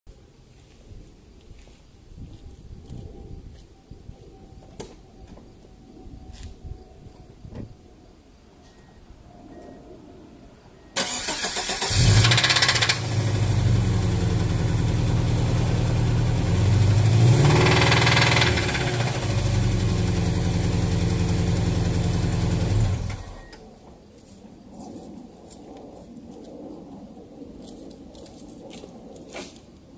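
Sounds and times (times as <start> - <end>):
engine starting and running: 11.0 - 23.6.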